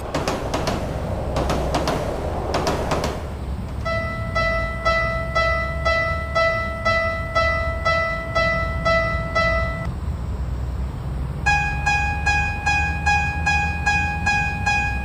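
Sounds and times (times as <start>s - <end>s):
low steady rumble: 0.0s - 15.0s
railroad crossing bell ringing: 3.8s - 9.9s, 11.5s - 15.0s.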